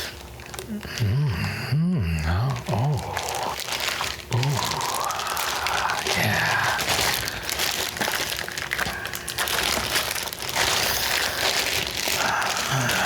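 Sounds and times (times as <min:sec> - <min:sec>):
packaging crinkling and rustling: 0:00.0 - 0:01.0, 0:02.4 - 0:13.0
low vocal grunt: 0:00.7 - 0:03.6, 0:04.3 - 0:07.0, 0:12.2 - 0:13.0.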